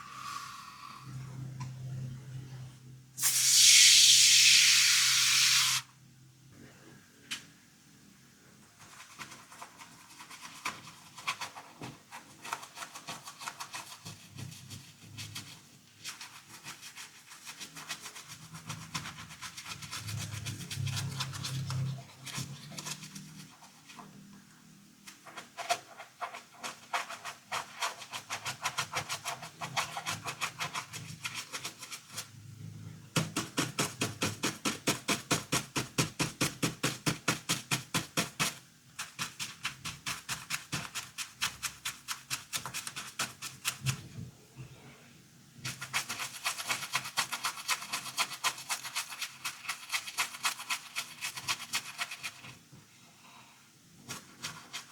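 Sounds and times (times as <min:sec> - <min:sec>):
brush scrubbing plastic toy: 0:08.8 - 0:24.1, 0:25.0 - 0:32.3, 0:33.2 - 0:44.0, 0:45.6 - 0:52.6, 0:54.1 - 0:54.9.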